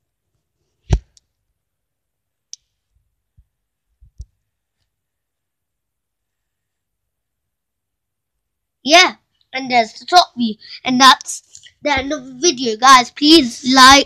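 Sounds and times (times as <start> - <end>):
light clicks and soft taps: 2.5 - 5.0.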